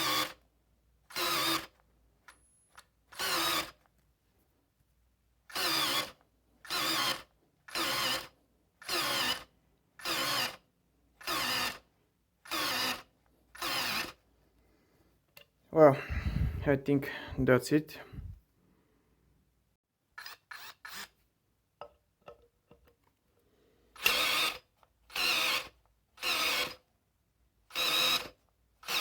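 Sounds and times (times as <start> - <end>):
cordless drill running in bursts: 0.0 - 0.4, 1.1 - 1.8, 3.1 - 3.8, 5.5 - 10.6, 11.2 - 11.8, 12.4 - 14.2, 24.0 - 26.8, 27.7 - 29.0.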